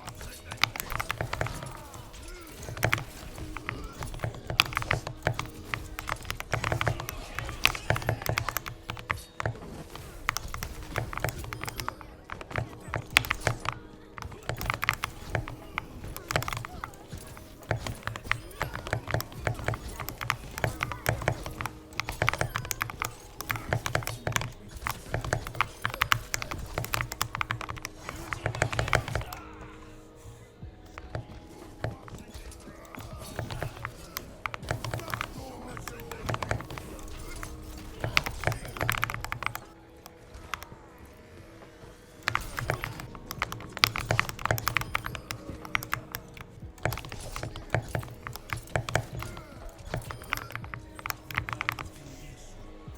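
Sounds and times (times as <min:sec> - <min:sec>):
fast mechanical keyboard typing: 0:00.0 - 0:29.9, 0:30.8 - 0:40.8, 0:42.2 - 0:52.4.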